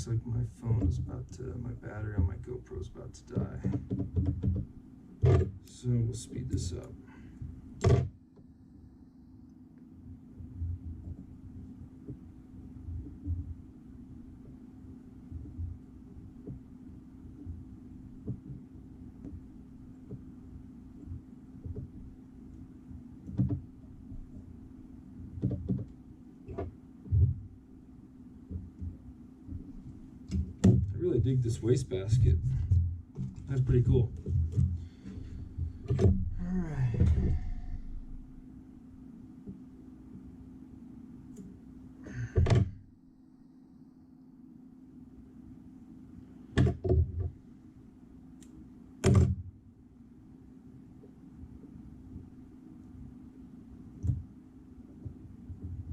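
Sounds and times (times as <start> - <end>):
steady low hum: 0.0 - 55.9
tools knocking on a desk: 3.4 - 4.6
dull thud: 32.1 - 38.4, 42.1 - 42.9.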